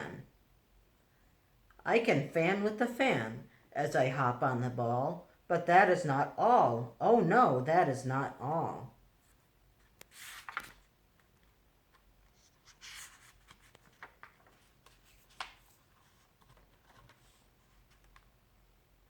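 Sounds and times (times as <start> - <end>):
book pages rustling: 9.2 - 18.4.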